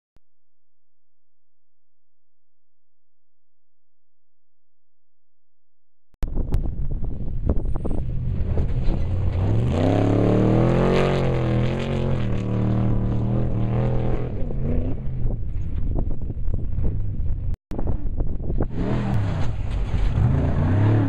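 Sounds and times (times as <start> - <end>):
dirt noise: 6.3 - 21.0.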